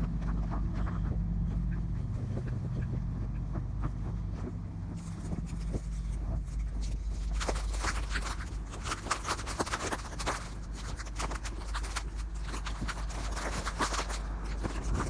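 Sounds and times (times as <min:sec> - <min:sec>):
wind rumble on microphone: 0:00.0 - 0:15.0
footsteps crunching through snow: 0:04.2 - 0:15.0.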